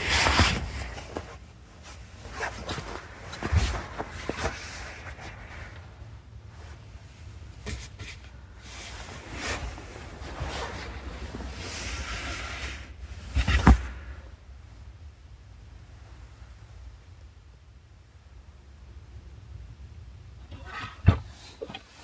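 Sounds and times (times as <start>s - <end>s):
rustling: 0.0s - 14.4s.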